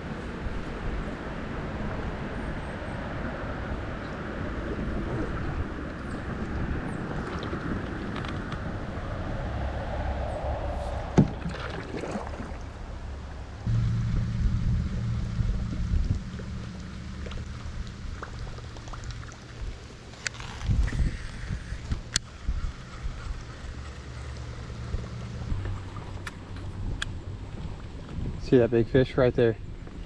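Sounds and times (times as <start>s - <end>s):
wind on microphone: 0.0s - 12.8s, 13.6s - 28.9s
river water rushing: 9.2s - 13.7s.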